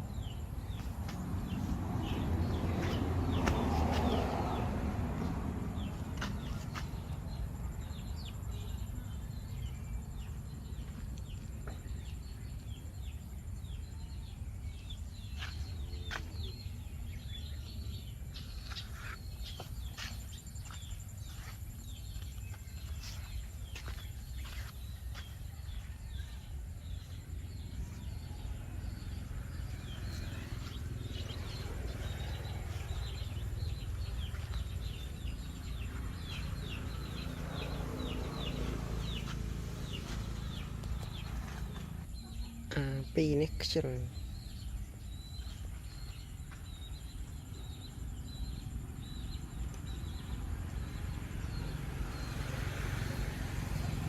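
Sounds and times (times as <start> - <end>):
birds chirping: 0.0 - 54.0
steady low rumble: 27.2 - 42.2.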